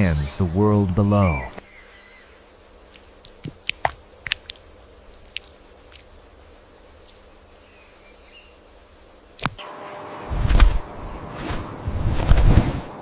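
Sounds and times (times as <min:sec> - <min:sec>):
faint bird chirps: 0:00.0 - 0:02.5, 0:07.6 - 0:08.7.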